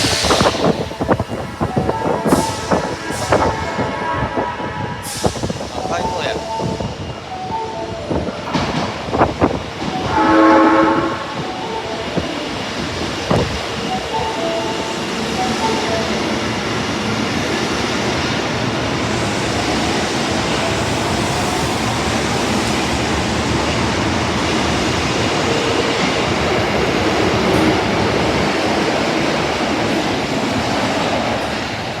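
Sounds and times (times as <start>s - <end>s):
subway train horn blast: 0.0s - 5.6s, 9.9s - 12.7s
train running rumble: 0.0s - 32.0s.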